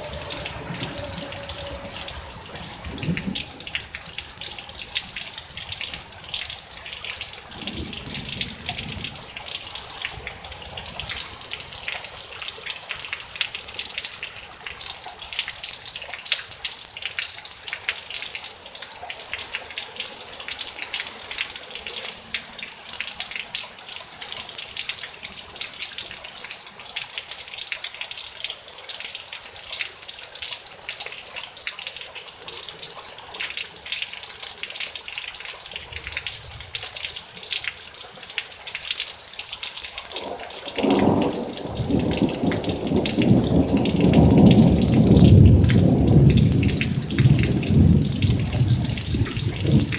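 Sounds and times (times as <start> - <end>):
steady rain falling: 0.0 - 49.9.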